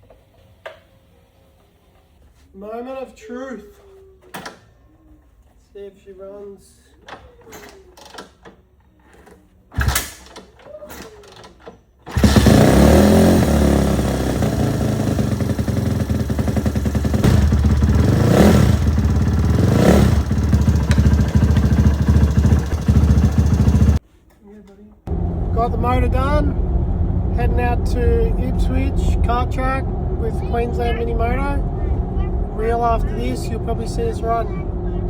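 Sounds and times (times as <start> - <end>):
minibike engine running: 12.1 - 24.0, 25.1 - 35.0.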